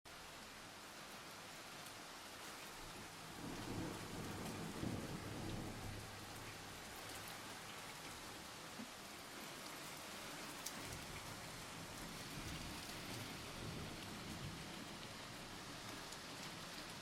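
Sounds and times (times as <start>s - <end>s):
steady rain falling: 0.1s - 17.0s
thunder rumbling: 3.4s - 6.7s, 12.3s - 15.4s.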